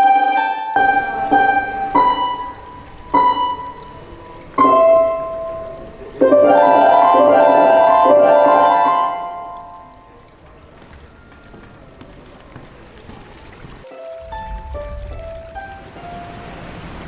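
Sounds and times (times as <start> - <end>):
harp notes plucked: 0.0 - 10.3
harp rolled chord: 0.0 - 10.4.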